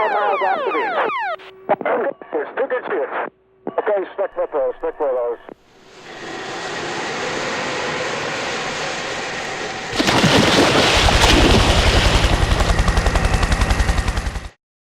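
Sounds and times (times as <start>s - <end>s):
aircraft noise: 0.0s - 1.5s, 5.8s - 14.5s.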